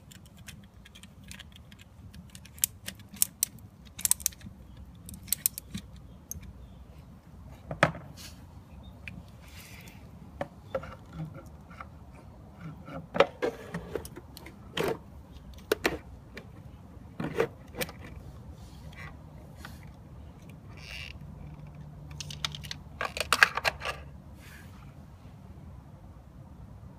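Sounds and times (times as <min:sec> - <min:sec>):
plastic and metal parts clicking: 0:00.0 - 0:06.5, 0:20.4 - 0:24.0.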